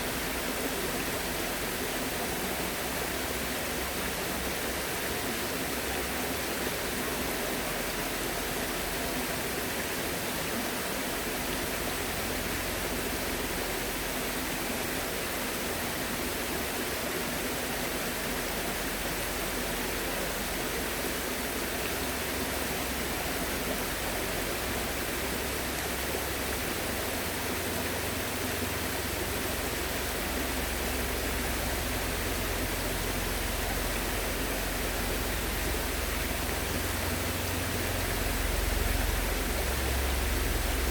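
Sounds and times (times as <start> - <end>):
steady rushing noise: 22.8 - 40.9
low rumble: 32.7 - 40.9.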